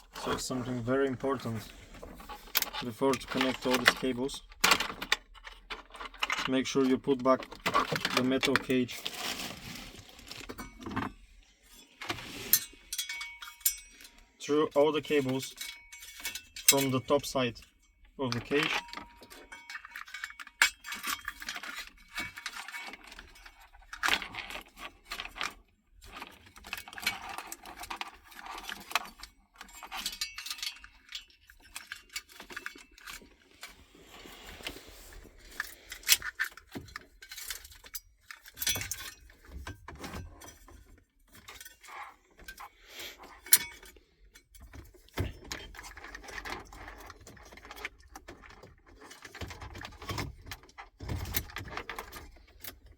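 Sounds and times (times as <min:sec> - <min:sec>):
metallic clinks: 0:12.9 - 0:14.2.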